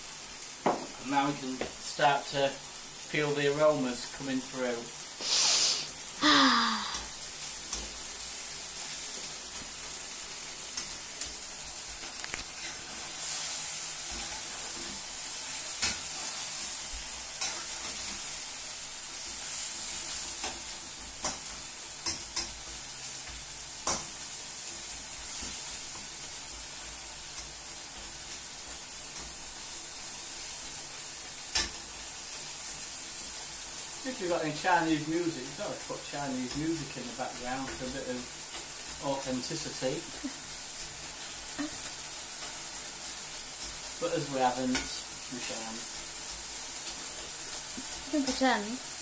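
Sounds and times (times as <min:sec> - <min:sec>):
beef sizzling in a frying pan: 0:00.0 - 0:49.0.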